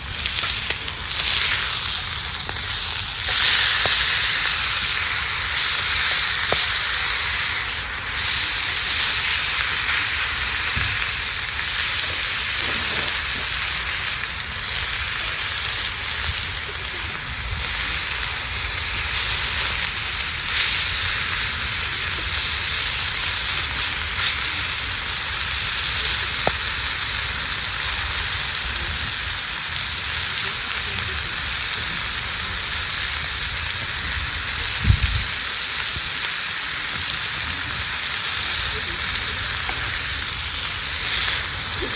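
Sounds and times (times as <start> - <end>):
steak sizzling: 0.0 - 41.9.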